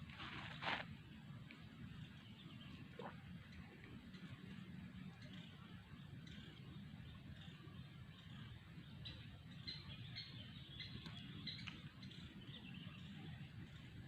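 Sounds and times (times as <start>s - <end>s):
low steady rumble: 0.0s - 14.0s
bird chirps: 5.1s - 13.9s.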